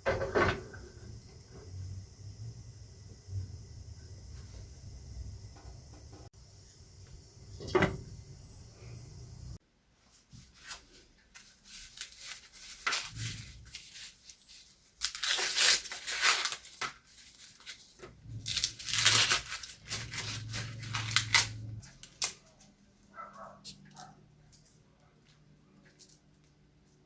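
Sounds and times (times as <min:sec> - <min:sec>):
paper tearing and crumpling: 0:10.6 - 0:22.7.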